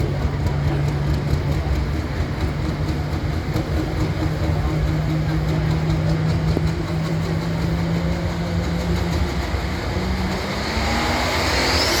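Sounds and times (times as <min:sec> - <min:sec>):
tractor engine running: 0:00.0 - 0:12.0
high-pitched whine: 0:10.3 - 0:12.0.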